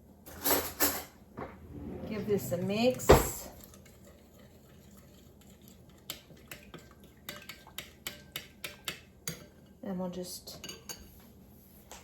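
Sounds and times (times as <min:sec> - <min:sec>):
spoon clinking against a dish: 0:03.7 - 0:09.7, 0:10.5 - 0:11.1.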